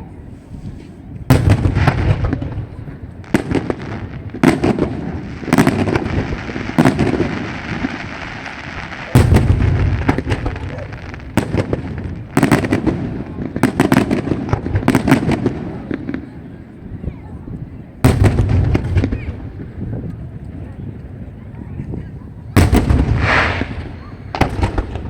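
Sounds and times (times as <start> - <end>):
fireworks crackling hiss: 0.4 - 13.7, 22.6 - 25.0
fireworks bursting bangs: 1.3 - 16.4, 18.0 - 20.1, 22.5 - 25.0.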